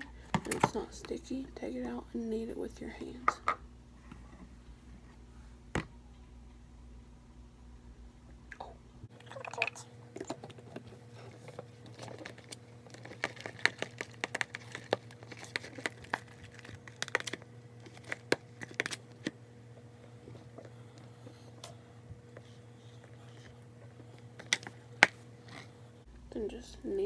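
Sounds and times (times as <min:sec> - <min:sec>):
slime being stirred: 0:09.4 - 0:19.3.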